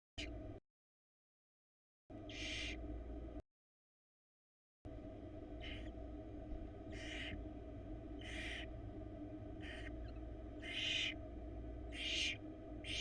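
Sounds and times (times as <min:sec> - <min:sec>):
steady low hum: 0:00.2 - 0:00.6, 0:02.1 - 0:03.4, 0:04.9 - 0:13.0
owl nestlings hissing: 0:02.2 - 0:02.8, 0:05.5 - 0:06.0, 0:06.8 - 0:08.8, 0:09.5 - 0:13.0.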